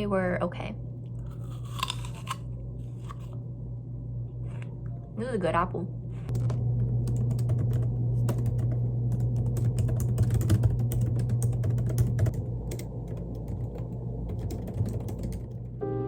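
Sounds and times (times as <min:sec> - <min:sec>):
steady low hum: 0:00.0 - 0:16.0
typing on computer keyboard: 0:07.1 - 0:15.6.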